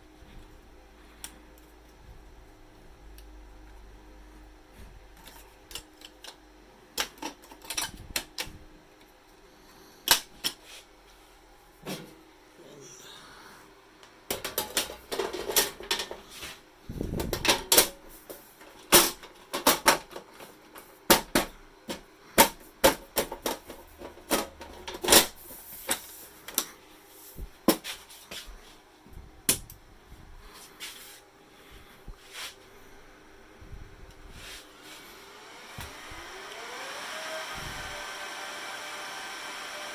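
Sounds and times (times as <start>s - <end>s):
faint steady hum: 0.0s - 39.9s
hands handling server parts: 14.3s - 28.8s.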